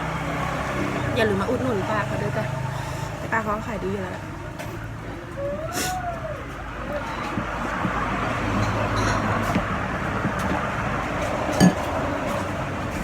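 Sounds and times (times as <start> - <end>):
road traffic passing: 0.0 - 13.0
engine hum: 6.2 - 13.0.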